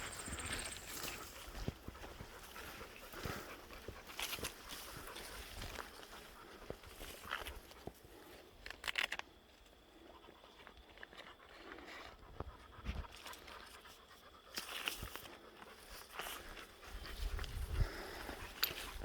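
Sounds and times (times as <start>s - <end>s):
person panting: 0.0s - 6.7s, 15.3s - 19.0s
faint footsteps on a trail: 0.0s - 8.6s, 9.4s - 19.0s.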